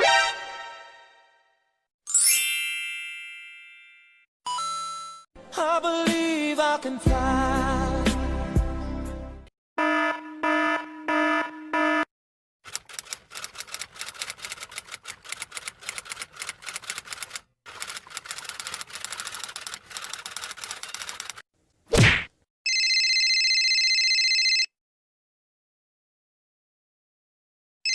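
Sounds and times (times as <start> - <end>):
rapid typing clicks: 12.6 - 21.4.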